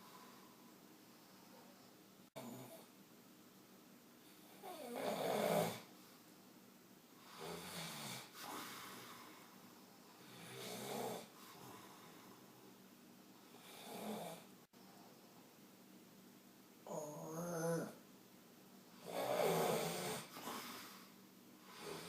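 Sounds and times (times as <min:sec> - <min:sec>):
man snoring loudly: 0:04.6 - 0:05.9, 0:07.3 - 0:08.3, 0:10.2 - 0:11.3, 0:13.6 - 0:14.4, 0:19.0 - 0:20.4, 0:21.7 - 0:22.0.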